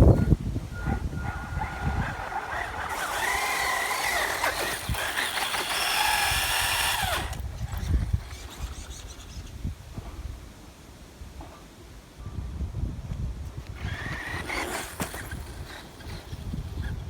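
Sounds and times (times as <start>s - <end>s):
electric motor whining: 0.8s - 9.5s, 13.7s - 17.0s.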